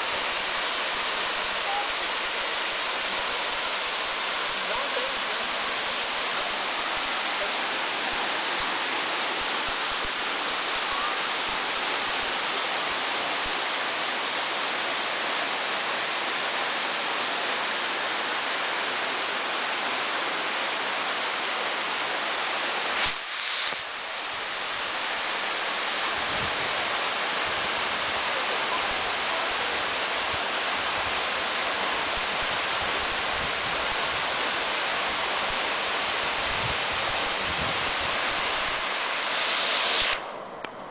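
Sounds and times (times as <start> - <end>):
waterfall rushing: 0.0 - 40.9
brief swish: 23.0 - 23.9, 38.8 - 40.3.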